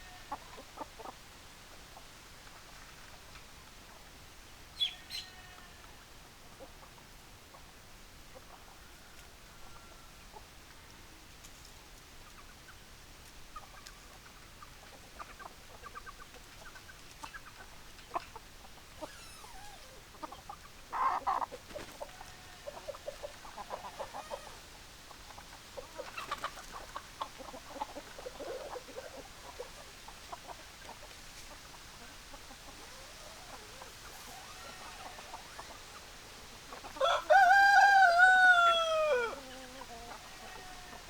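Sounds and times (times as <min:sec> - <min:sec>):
hens clucking: 0:00.0 - 0:01.2, 0:13.5 - 0:41.0.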